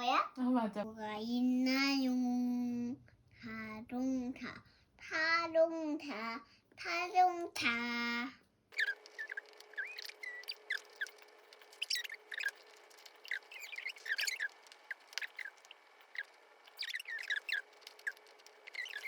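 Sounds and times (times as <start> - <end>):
high-pitched chirps and squeaks: 8.8 - 19.0
sharp clicks: 8.8 - 19.0.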